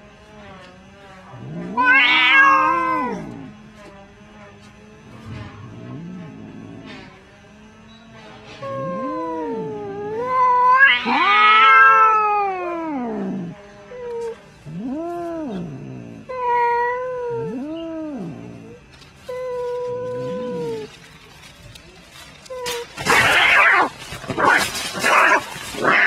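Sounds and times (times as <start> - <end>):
cats yowling: 1.4 - 3.5, 8.6 - 21.2, 22.1 - 26.0.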